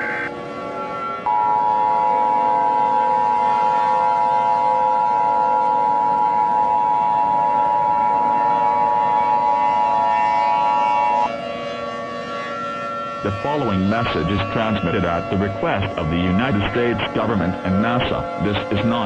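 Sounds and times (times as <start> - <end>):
two steady high alert tones: 0.0 - 0.3.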